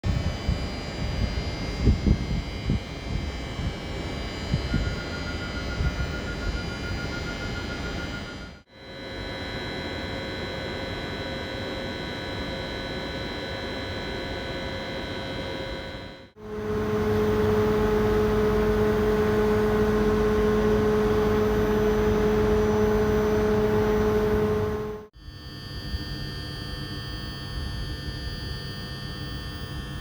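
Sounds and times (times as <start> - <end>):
steady pitched whine: 0.1 - 25.1
train equipment humming: 14.7 - 25.1.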